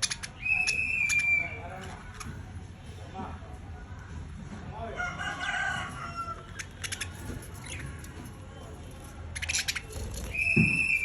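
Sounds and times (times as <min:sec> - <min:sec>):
budgerigars chirping and warbling: 0:00.0 - 0:02.5, 0:06.3 - 0:11.0.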